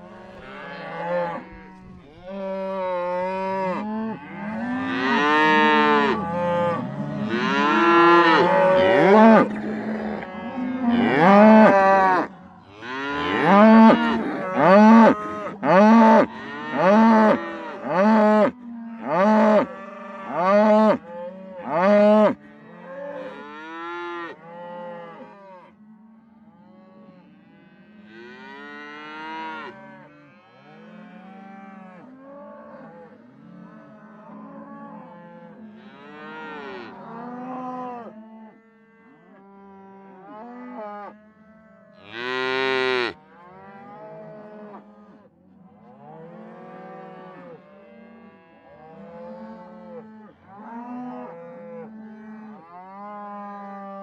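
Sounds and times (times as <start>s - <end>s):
cattle mooing: 0.0s - 25.8s, 26.7s - 38.2s, 39.0s - 44.9s.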